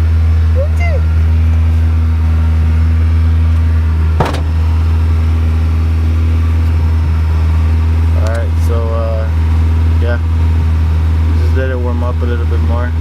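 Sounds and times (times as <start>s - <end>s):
car engine idling: 1.9s - 9.6s
sharp knock: 4.2s - 4.8s.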